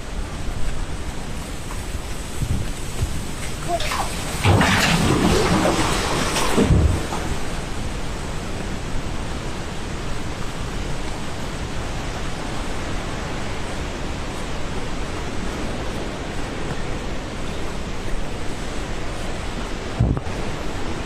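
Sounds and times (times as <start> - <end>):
river roaring: 0.0 - 21.0.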